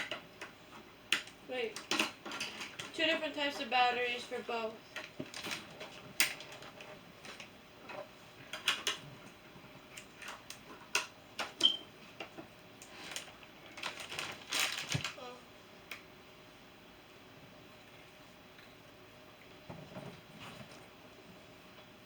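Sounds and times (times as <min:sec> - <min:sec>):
plastic parts clicking and rustling: 0:01.1 - 0:03.0, 0:05.0 - 0:09.0, 0:09.9 - 0:15.2.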